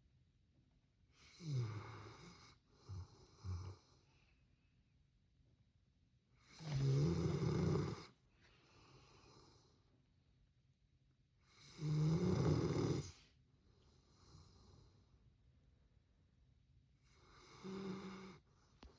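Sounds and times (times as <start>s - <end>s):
dog snoring: 1.1s - 4.0s, 6.4s - 8.2s, 11.4s - 13.3s, 17.0s - 18.5s
dog breathing softly: 8.0s - 9.9s.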